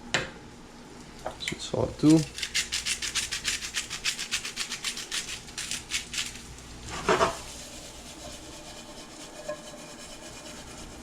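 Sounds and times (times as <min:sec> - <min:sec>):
salt shaker rattling: 0:02.0 - 0:06.7.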